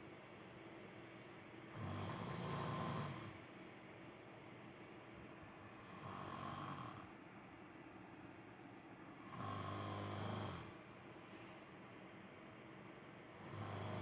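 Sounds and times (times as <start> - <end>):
man snoring: 1.7 - 3.4, 5.8 - 7.1, 9.2 - 10.8, 13.3 - 14.0.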